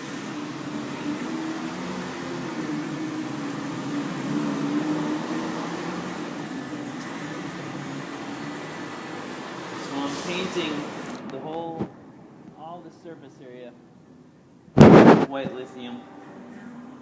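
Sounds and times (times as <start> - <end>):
steady rushing noise: 14.8 - 15.6.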